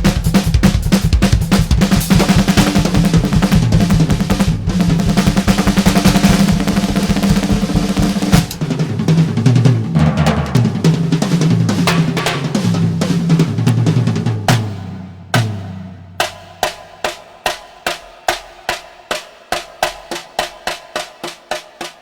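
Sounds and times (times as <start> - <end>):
drum kit playing fast: 0.0 - 22.0.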